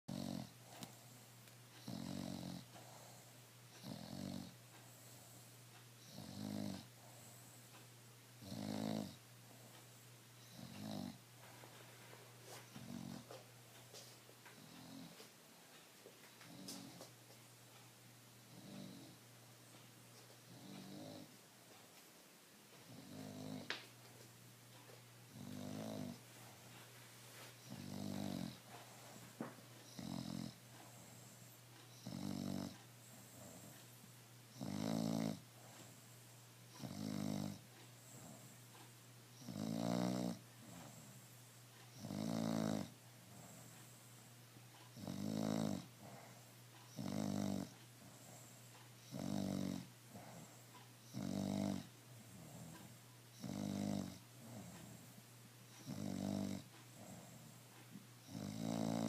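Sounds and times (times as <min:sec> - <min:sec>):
dog snoring: 0:00.1 - 0:07.7, 0:08.4 - 0:09.8, 0:10.4 - 0:11.2, 0:12.5 - 0:15.3, 0:16.4 - 0:17.1, 0:18.4 - 0:19.2, 0:20.5 - 0:21.4, 0:22.8 - 0:23.8, 0:25.3 - 0:26.8, 0:27.6 - 0:33.9, 0:34.5 - 0:36.1, 0:36.7 - 0:44.2, 0:44.8 - 0:59.0.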